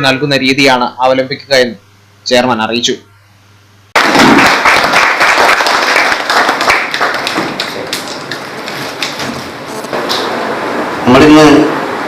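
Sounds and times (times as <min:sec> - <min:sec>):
small crowd applauding: 0:04.0 - 0:09.5.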